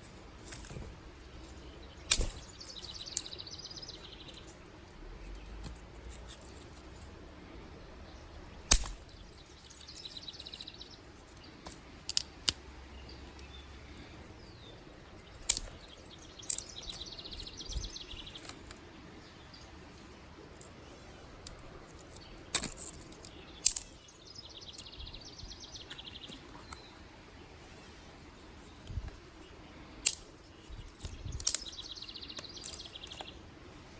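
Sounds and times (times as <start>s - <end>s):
sticks snapping: 0.0s - 7.3s, 8.6s - 12.7s, 15.2s - 18.8s, 21.4s - 24.0s, 30.0s - 33.4s.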